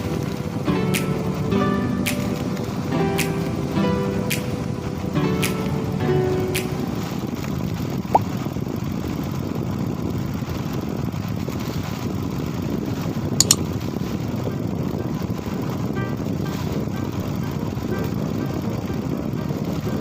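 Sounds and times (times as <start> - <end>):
sharp double click: 13.4 - 13.6.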